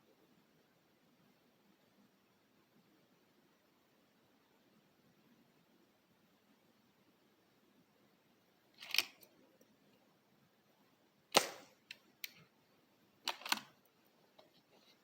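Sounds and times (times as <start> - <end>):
air rifle shot: 11.3 - 11.8.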